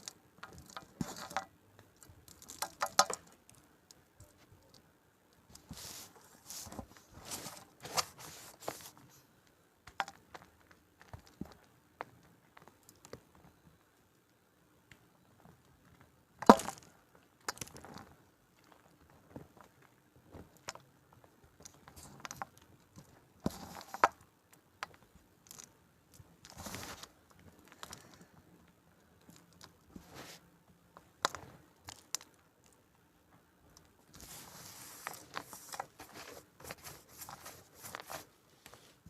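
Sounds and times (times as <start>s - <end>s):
chalk crunching and crumbling: 5.6s - 9.2s, 34.1s - 39.0s.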